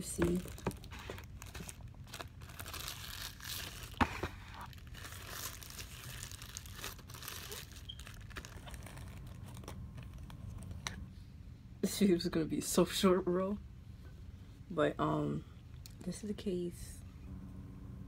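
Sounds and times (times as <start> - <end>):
packaging rustling and crinkling: 0.0 - 10.9.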